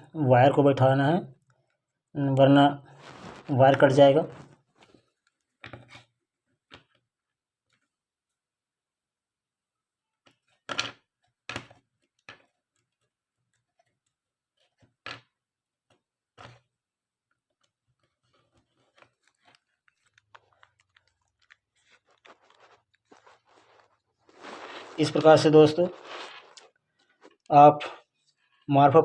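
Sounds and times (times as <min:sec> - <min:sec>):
handling rustle: 0:02.9 - 0:03.6, 0:18.0 - 0:27.5.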